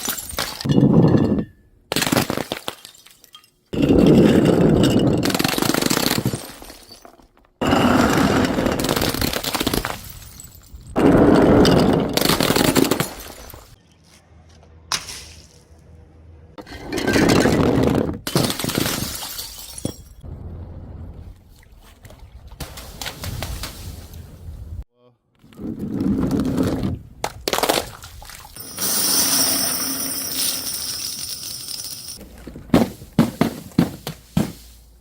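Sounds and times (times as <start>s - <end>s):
glass bottles smashing: 0.0s - 10.9s, 11.6s - 13.8s, 16.6s - 20.2s, 28.6s - 34.7s.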